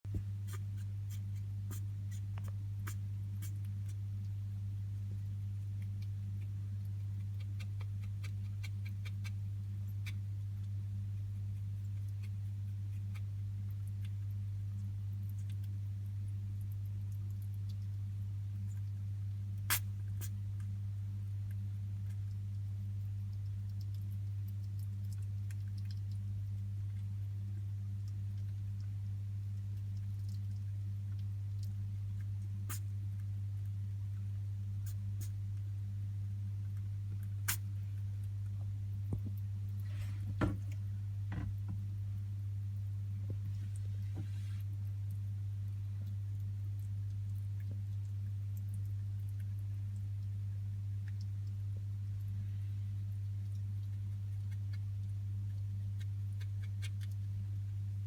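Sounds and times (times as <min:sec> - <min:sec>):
low electrical hum: 0:00.0 - 0:58.0
rat sneezing: 0:19.7 - 0:20.4.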